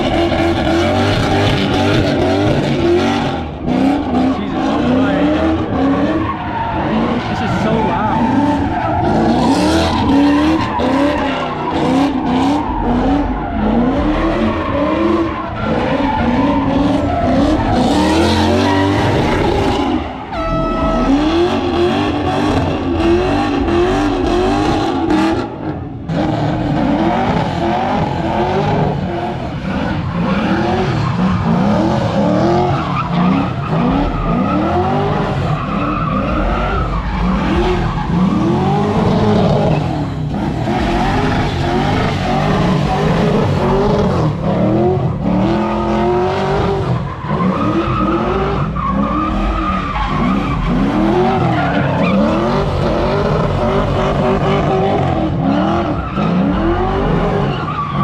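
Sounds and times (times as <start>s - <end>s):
car engine revving: 0.0s - 58.0s
tires squealing: 0.0s - 58.0s
horn-like tone: 20.3s - 22.4s.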